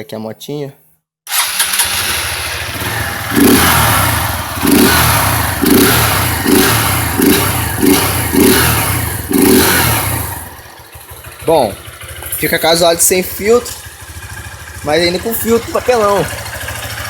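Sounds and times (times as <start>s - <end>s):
motorcycle engine revving: 1.3s - 17.0s.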